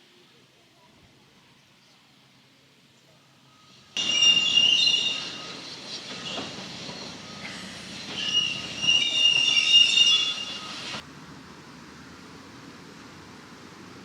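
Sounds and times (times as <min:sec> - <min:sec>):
train running noise: 0:03.3 - 0:14.0
rail wheels squealing: 0:03.5 - 0:11.0.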